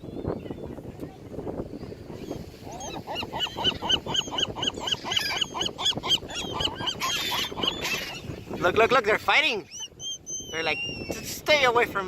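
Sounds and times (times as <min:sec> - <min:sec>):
birds squabbling calls: 0:02.1 - 0:08.7, 0:09.4 - 0:11.4.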